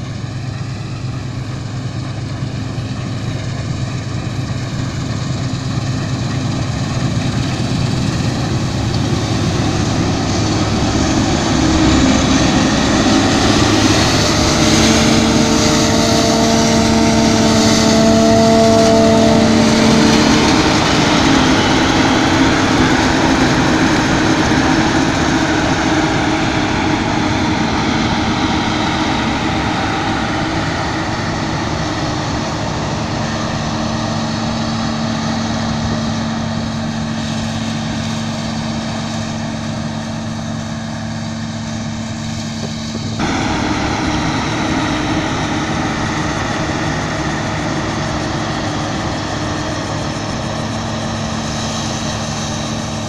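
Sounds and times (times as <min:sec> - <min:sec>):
combine harvester diesel engine: 0:00.0 - 0:53.0.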